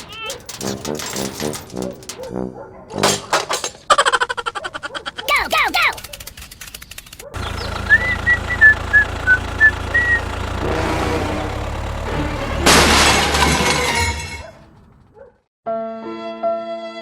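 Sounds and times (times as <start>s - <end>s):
low engine rumble: 6.9s - 13.9s.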